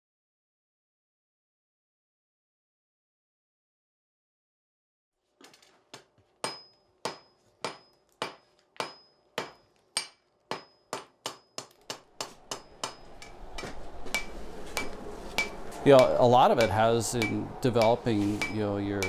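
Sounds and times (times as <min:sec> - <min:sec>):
hammer striking iron on an anvil: 0:06.4 - 0:19.0.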